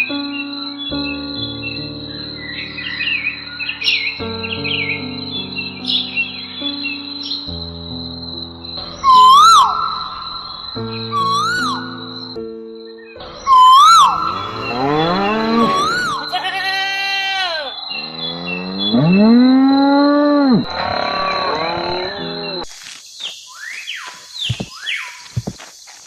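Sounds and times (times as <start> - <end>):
cattle mooing: 14.3 - 16.4, 18.0 - 22.6.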